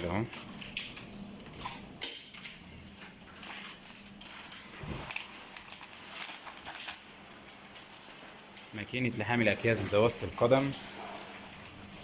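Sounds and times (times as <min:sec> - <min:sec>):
plastic bag rustling: 0:03.0 - 0:12.0.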